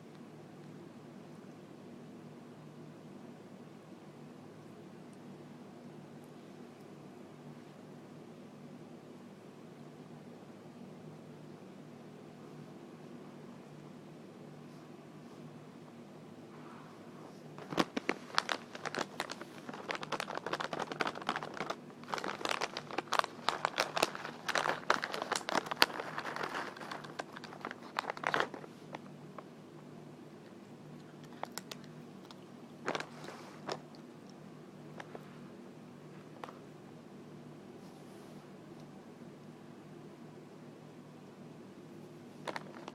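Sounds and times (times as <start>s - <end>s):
faint steady hum: 0.0s - 42.9s
material crinkling: 17.3s - 29.5s, 31.0s - 35.3s, 42.4s - 42.9s.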